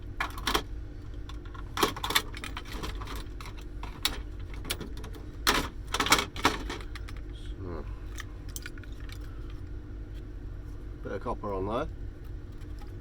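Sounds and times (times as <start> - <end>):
metal and plastic parts clattering: 0.2 - 0.7, 1.3 - 7.2.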